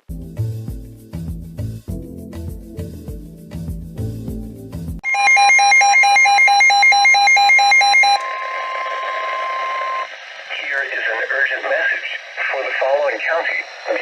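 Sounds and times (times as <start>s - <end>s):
music: 0.0s - 5.0s
electronic alert beeping: 5.0s - 8.5s.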